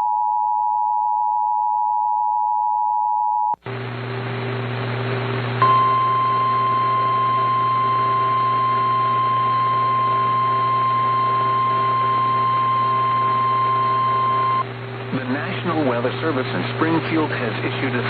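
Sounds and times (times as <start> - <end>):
radio hiss and hum: 3.6 - 18.0.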